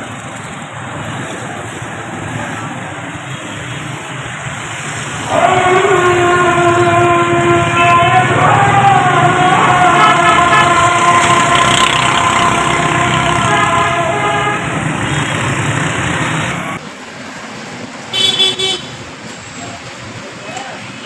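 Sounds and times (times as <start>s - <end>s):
road traffic: 0.0s - 21.0s
vehicle horns sounding: 5.3s - 15.7s, 18.1s - 19.0s.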